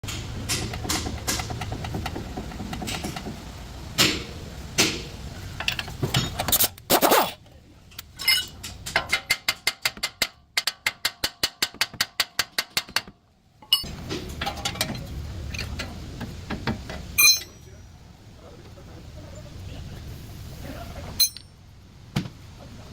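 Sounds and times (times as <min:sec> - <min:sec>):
sharp metal knocks: 0:08.2 - 0:15.0
low engine rumble: 0:13.4 - 0:22.9.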